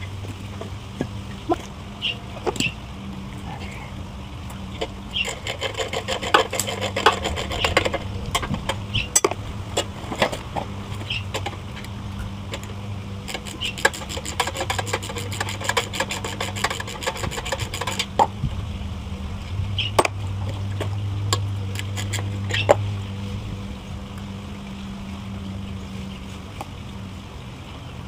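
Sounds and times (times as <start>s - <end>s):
steady low hum: 0.0s - 28.0s
hand tools clinking and scraping: 4.8s - 11.9s, 13.3s - 18.2s, 21.3s - 22.8s.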